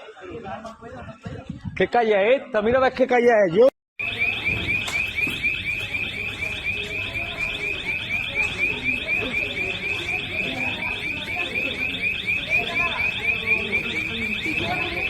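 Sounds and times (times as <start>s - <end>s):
electronic alarm warbling: 4.0s - 15.0s.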